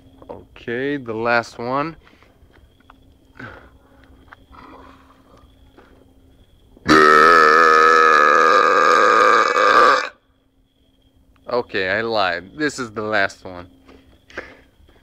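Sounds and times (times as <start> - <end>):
long loud burp: 6.9 - 10.2.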